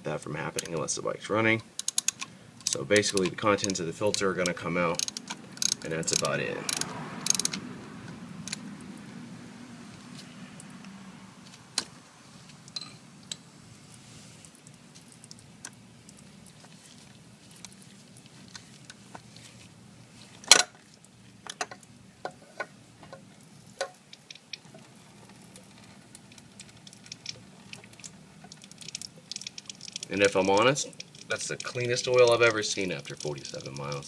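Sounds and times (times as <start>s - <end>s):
oil dripping into drain pan: 9.9s - 11.9s, 12.5s - 19.3s, 20.8s - 34.0s.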